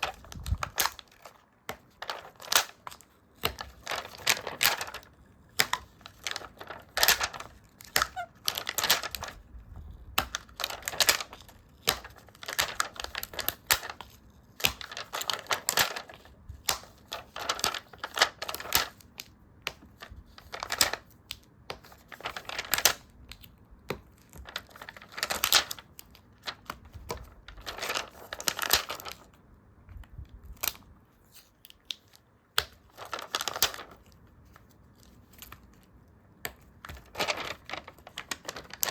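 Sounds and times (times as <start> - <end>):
stickers peeling and paper rustling: 0.0 - 19.0, 30.4 - 38.9.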